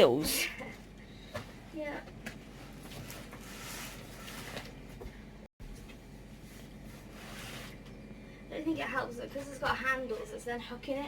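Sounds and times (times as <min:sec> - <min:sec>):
cardboard rustling and scraping: 0:02.5 - 0:05.0, 0:06.4 - 0:07.8.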